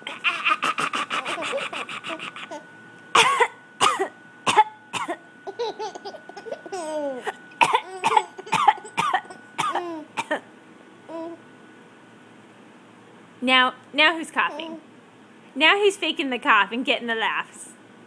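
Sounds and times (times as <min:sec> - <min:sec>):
baby laughing: 0:00.0 - 0:02.6, 0:05.5 - 0:10.2, 0:11.1 - 0:11.4, 0:14.5 - 0:14.8
woman fake-coughing: 0:03.2 - 0:10.4, 0:14.5 - 0:14.8.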